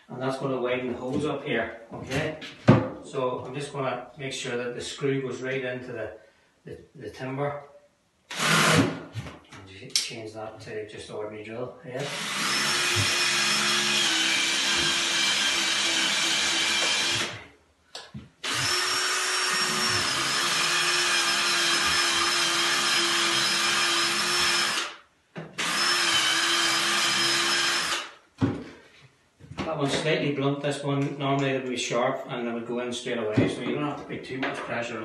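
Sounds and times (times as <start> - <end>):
power drill whining: 8.3 - 8.9, 12.0 - 17.4, 18.4 - 25.0, 25.6 - 28.2.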